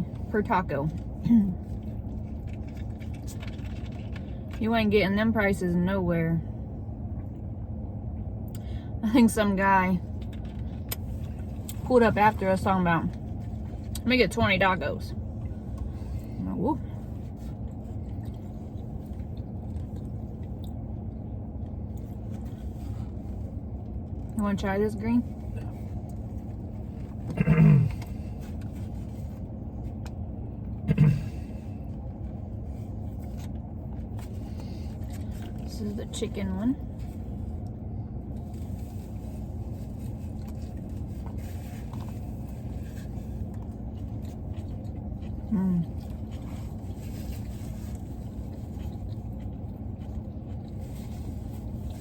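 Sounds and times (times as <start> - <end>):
low background rumble: 0.0 - 52.0
low hum: 0.0 - 52.0
person chewing food: 17.0 - 24.4, 37.1 - 52.0.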